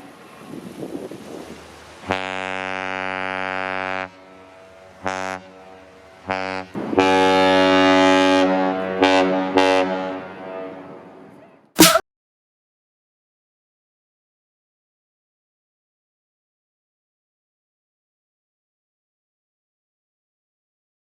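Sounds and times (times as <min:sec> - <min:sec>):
deep ship horn blasts: 0:02.0 - 0:11.3.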